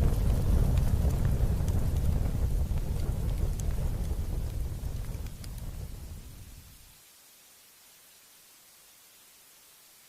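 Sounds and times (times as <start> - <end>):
wind rumble on microphone: 0.0 - 6.8
campfire crackling: 0.0 - 7.0.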